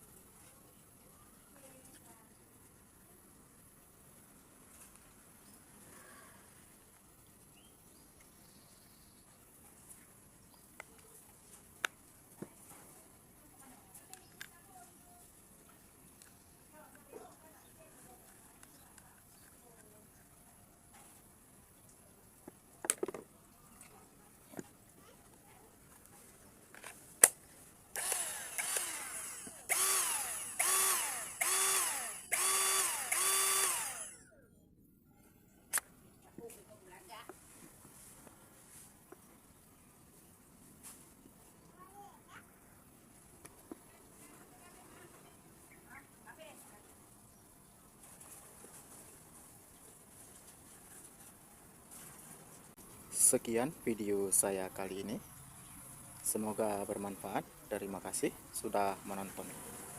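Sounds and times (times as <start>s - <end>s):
mini chainsaw motor whirring: 27.9s - 34.3s.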